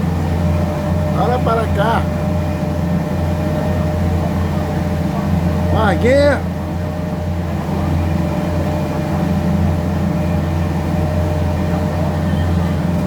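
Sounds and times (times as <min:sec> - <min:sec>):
ferry engine drone: 0:00.0 - 0:13.0.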